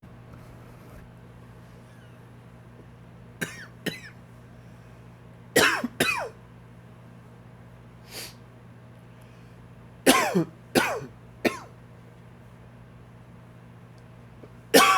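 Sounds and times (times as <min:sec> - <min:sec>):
man's dry cough: 0:03.4 - 0:04.1, 0:05.6 - 0:06.4, 0:10.1 - 0:11.7.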